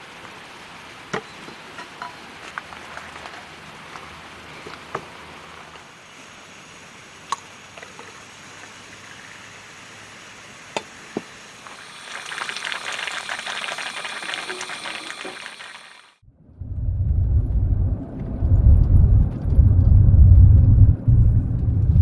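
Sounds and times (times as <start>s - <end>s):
liquid bubbling and fizzing: 11.6s - 16.2s.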